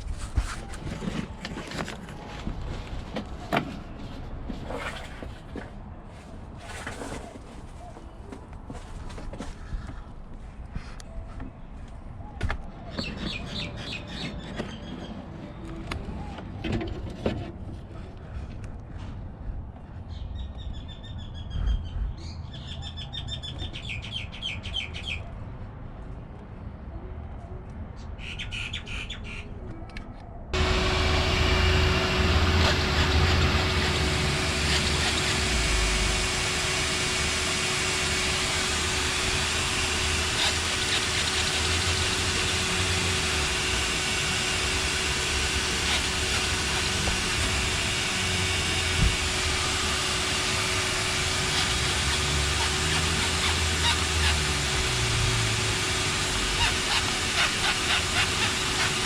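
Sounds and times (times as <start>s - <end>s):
shop vac blowing air: 30.6s - 59.0s.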